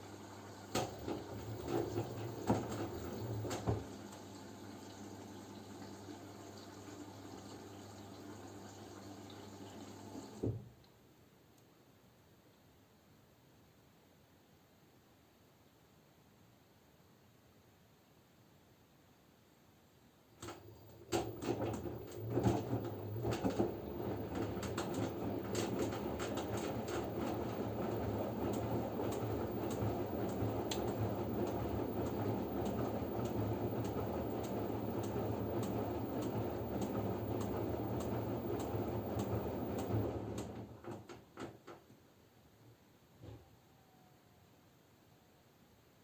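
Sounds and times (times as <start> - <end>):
washing machine drum tumbling: 0.7 - 4.0, 20.4 - 41.6.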